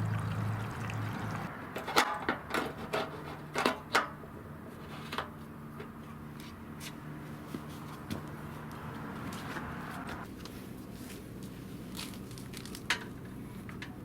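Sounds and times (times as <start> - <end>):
parts clicking and knocking: 1.7 - 4.2.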